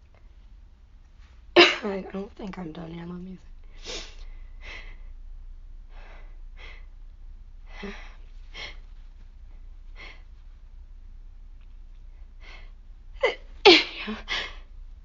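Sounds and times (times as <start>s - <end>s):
woman taking sharp breaths: 7.7s - 8.9s, 9.9s - 10.3s.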